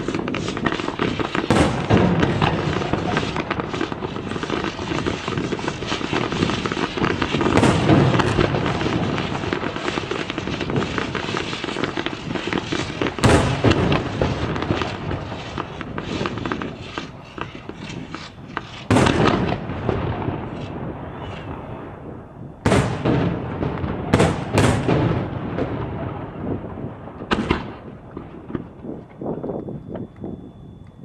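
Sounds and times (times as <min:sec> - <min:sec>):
firework crackling: 0:00.0 - 0:30.6
firework booms with rolling echo: 0:00.0 - 0:30.7.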